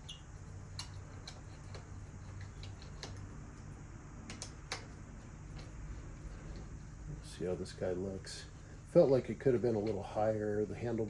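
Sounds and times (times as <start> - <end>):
light clicks of tools: 0.0 - 3.7
low steady hum: 0.0 - 11.0.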